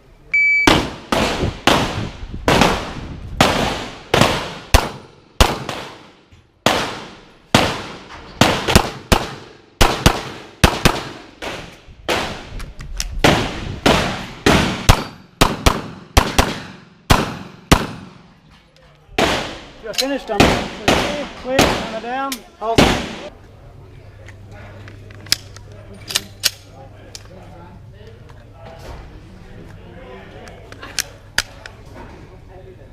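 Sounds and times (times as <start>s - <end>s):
rapid pistol shots: 0.7s - 12.5s, 13.2s - 18.2s, 19.2s - 19.7s, 20.4s - 22.0s, 22.8s - 23.3s.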